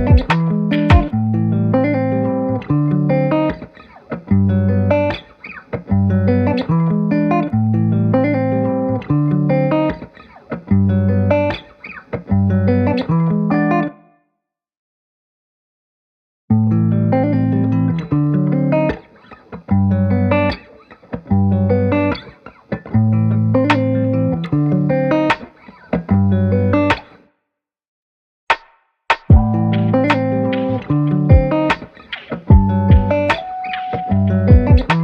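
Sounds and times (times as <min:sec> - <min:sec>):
low bass line: 0:00.0 - 0:01.9, 0:29.3 - 0:31.6, 0:32.5 - 0:33.3, 0:34.1 - 0:35.0
plucked notes: 0:00.0 - 0:03.7, 0:29.3 - 0:35.0.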